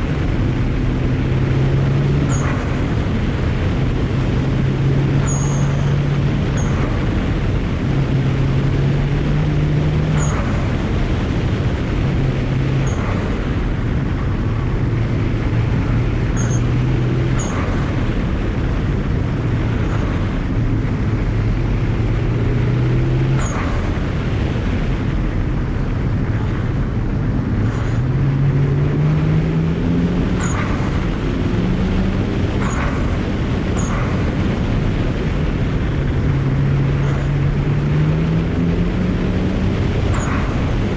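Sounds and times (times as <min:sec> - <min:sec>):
car engine revving: 0:00.0 - 0:40.9.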